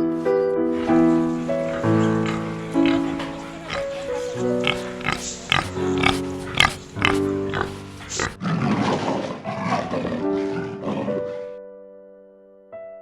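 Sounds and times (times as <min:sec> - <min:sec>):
rough animal call: 0:00.8 - 0:10.7.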